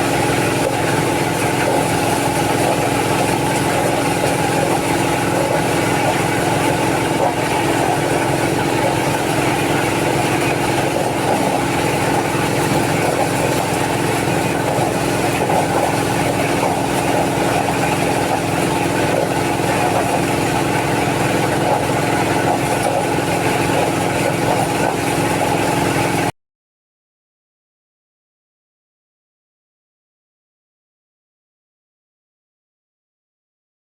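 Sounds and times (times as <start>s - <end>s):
engine-driven corn sheller running: 0.0s - 26.3s.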